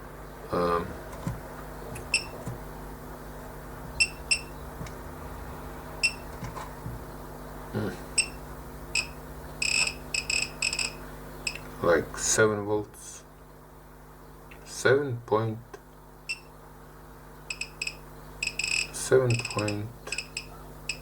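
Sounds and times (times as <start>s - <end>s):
low electrical hum: 0.0s - 21.0s
electronic button beeps: 4.0s - 4.5s.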